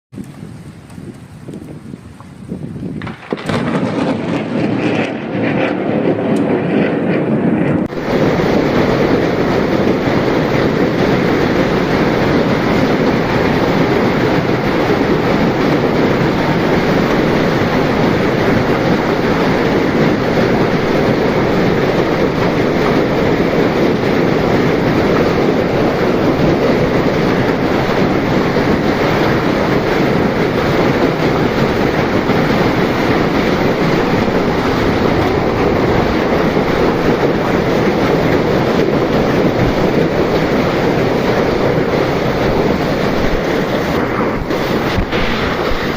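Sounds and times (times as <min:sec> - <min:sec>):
heavy rain: 0:00.1 - 0:45.9
wind: 0:00.1 - 0:45.9.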